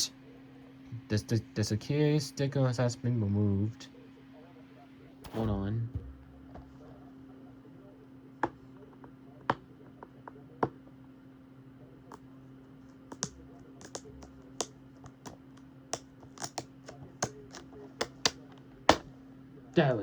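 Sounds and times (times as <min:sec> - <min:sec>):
fingers clicking plastic dvd case: 0:13.1 - 0:19.1.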